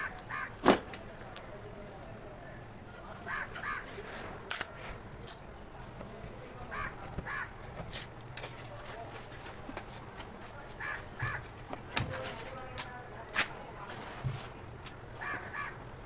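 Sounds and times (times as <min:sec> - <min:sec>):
crows cawing: 0:00.0 - 0:00.6, 0:03.2 - 0:03.9, 0:06.7 - 0:07.6, 0:10.8 - 0:11.5, 0:15.2 - 0:15.8.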